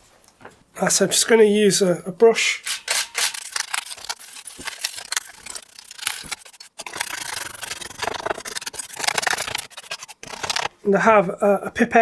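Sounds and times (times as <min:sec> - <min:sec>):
brush scrubbing keyboard switches: 0:02.6 - 0:10.7.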